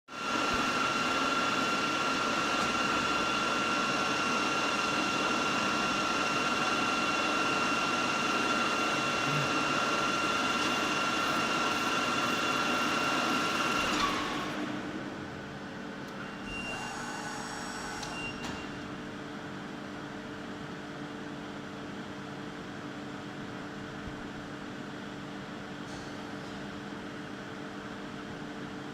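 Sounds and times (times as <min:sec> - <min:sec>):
milling machine hum: 0:00.2 - 0:18.4.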